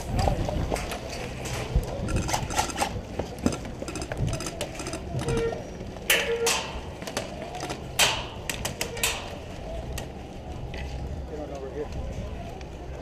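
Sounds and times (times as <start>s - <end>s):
sharp cracks and clicks: 6.1s - 10.1s.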